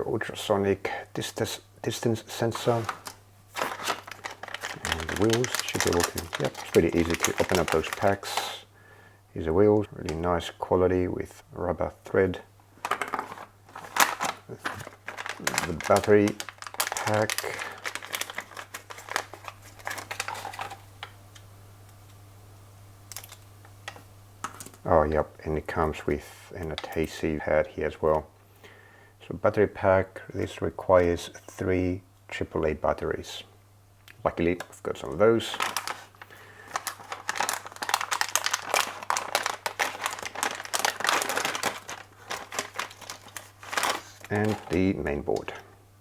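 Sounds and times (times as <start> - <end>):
faint low hum: 0.0 - 46.0
plastic packaging crinkling: 1.9 - 8.6, 12.8 - 21.2, 23.1 - 24.8, 34.6 - 45.6.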